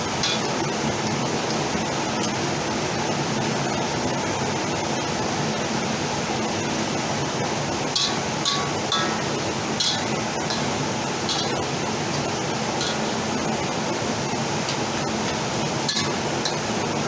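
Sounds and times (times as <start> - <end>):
shallots sizzling in oil: 0.0 - 17.0
utensil clinking on pan: 8.0 - 13.5, 14.7 - 16.8.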